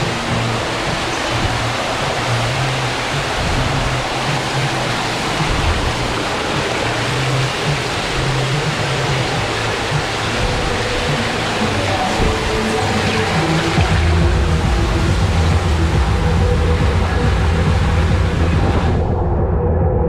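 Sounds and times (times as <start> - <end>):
water rushing through slide: 0.0 - 19.4
low steady hum: 0.0 - 20.0
soundtrack music: 0.0 - 20.0.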